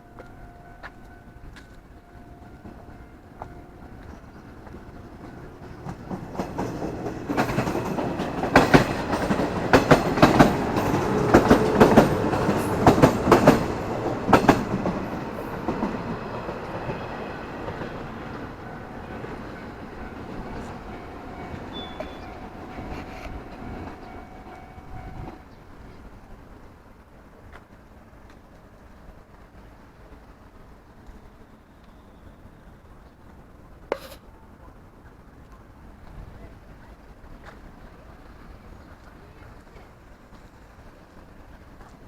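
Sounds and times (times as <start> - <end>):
train wheels clattering over rail joints: 4.6 - 16.9.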